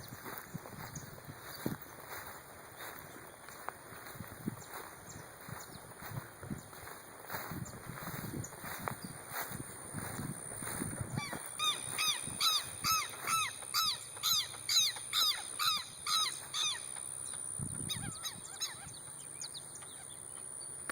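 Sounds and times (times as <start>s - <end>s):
bird calling harsh notes: 11.2s - 17.0s.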